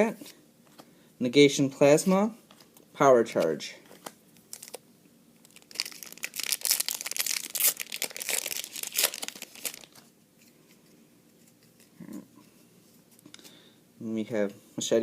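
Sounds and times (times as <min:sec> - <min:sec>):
wrapper tearing and crinkling: 0:04.5 - 0:04.8, 0:05.4 - 0:10.1.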